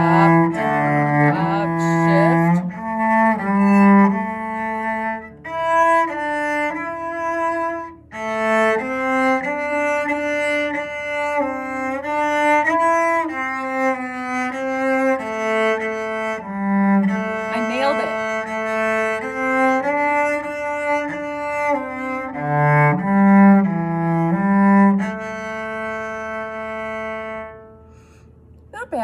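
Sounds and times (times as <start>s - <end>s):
cello playing slow melody: 0.0s - 28.2s.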